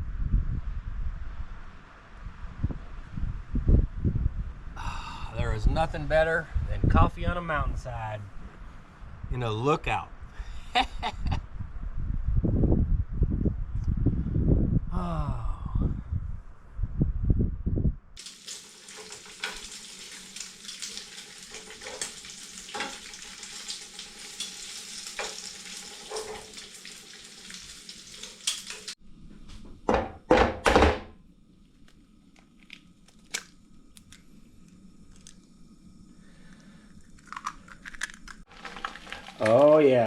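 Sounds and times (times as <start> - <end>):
eggs sizzling in a pan: 18.2 - 29.0, 38.4 - 40.0
loud knocks: 29.8 - 31.1.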